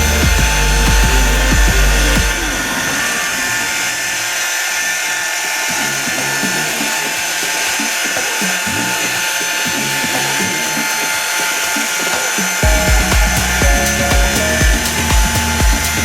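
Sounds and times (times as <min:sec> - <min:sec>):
heavy bass beat: 0:00.0 - 0:02.7, 0:12.6 - 0:16.0
background music: 0:00.0 - 0:03.2, 0:05.6 - 0:16.0
power tool whining: 0:00.0 - 0:16.0.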